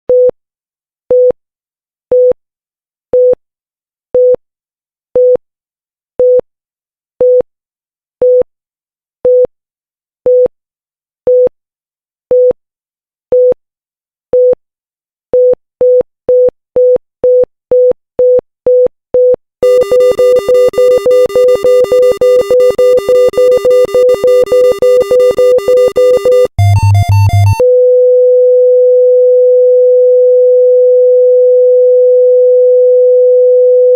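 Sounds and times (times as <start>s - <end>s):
pulse oximeter heartbeat beeps: 18.7s - 27.6s
continuous flatline tone: 19.6s - 27.6s.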